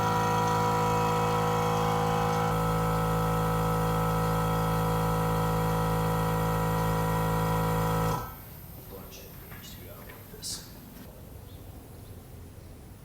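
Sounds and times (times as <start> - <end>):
electric air compressor running: 0.0 - 8.4.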